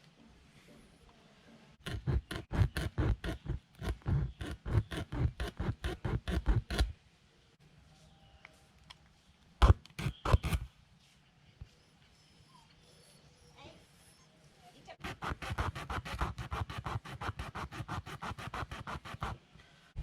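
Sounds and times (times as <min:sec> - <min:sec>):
rasp scraping in tyre hole: 0:01.8 - 0:07.0, 0:15.0 - 0:19.4.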